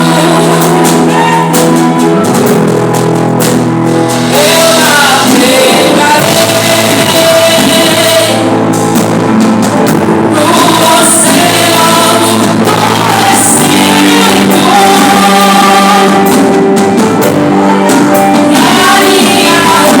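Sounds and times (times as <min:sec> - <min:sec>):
voices singing: 0:00.0 - 0:02.0, 0:04.3 - 0:08.7, 0:10.2 - 0:16.8, 0:17.4 - 0:20.0
band playing gospel music: 0:00.0 - 0:20.0.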